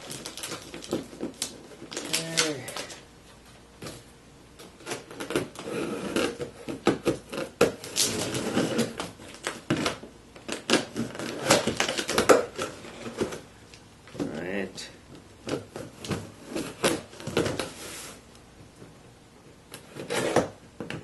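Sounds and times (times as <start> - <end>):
packing tape rustling: 0.0 - 3.1, 4.6 - 13.4.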